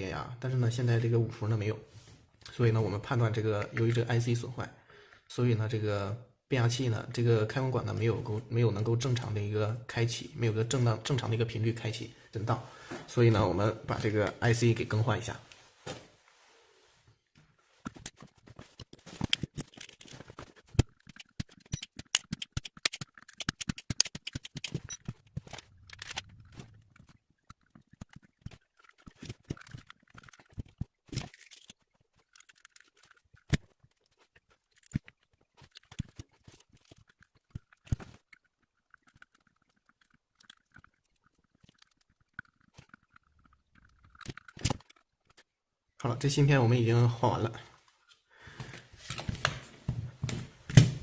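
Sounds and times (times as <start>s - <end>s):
hand tools clicking on circuit board: 19.2s - 26.2s.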